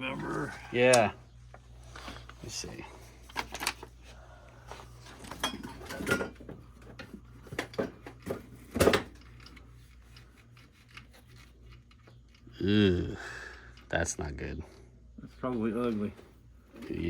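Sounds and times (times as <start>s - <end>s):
steady low hum: 0.0s - 17.0s
metal clinks and knocks: 5.2s - 10.2s.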